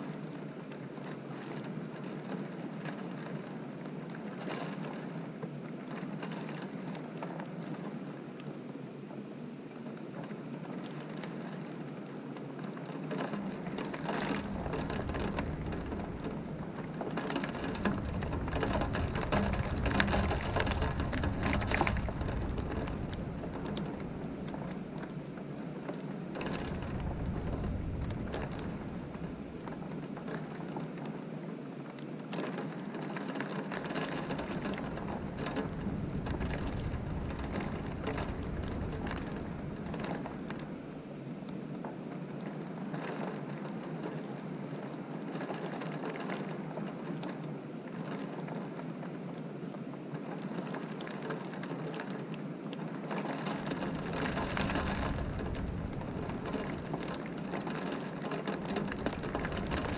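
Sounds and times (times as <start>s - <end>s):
rain beating on a window: 0.0s - 59.9s
low rumble: 14.4s - 16.9s, 17.5s - 24.8s, 26.5s - 29.6s, 34.4s - 40.6s, 53.8s - 57.5s.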